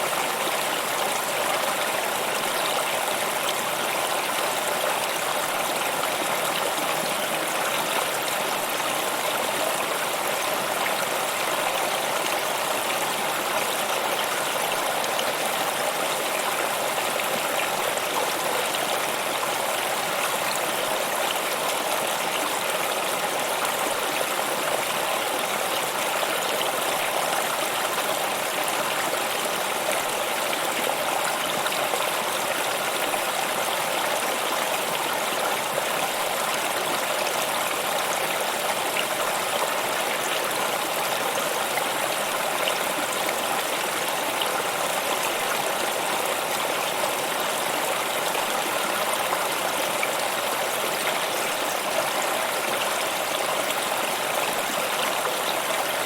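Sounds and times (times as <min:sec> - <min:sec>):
stream of water running: 0:00.0 - 0:56.0.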